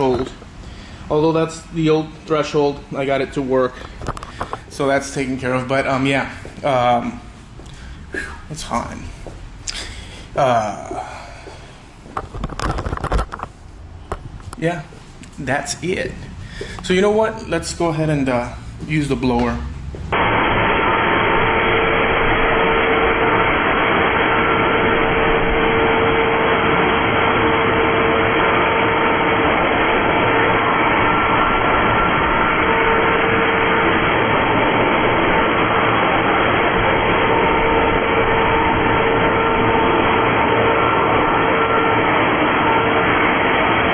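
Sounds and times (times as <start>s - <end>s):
faint motor whine: 0.0s - 43.9s
blower rushing air: 15.8s - 43.9s.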